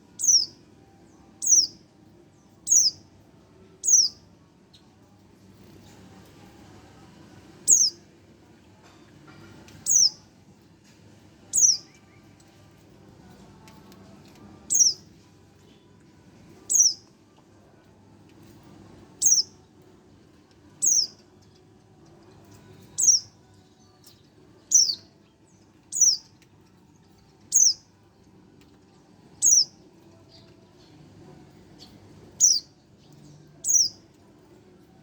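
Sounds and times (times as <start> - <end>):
bird chick high-pitched chirps: 0.2 - 0.6, 1.4 - 1.8, 2.6 - 3.0, 3.8 - 4.2, 7.6 - 8.1, 9.7 - 10.3, 11.5 - 12.2, 14.7 - 15.1, 16.6 - 17.1, 19.2 - 19.6, 20.8 - 21.3, 22.7 - 23.4, 24.6 - 26.4, 27.5 - 27.9, 29.4 - 30.8, 31.7 - 34.2.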